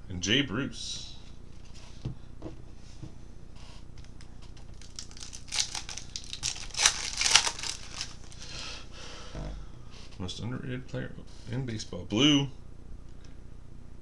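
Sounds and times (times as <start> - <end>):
plastic wrapper crinkling and tearing: 4.0 - 8.5.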